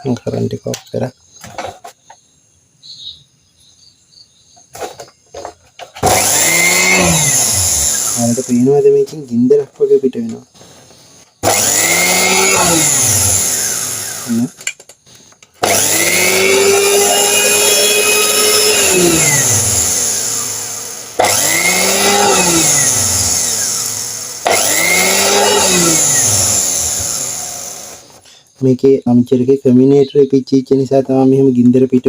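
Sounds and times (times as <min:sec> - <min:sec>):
mixer grinder motor whining: 0:06.0 - 0:08.9, 0:11.4 - 0:14.6, 0:15.6 - 0:28.2.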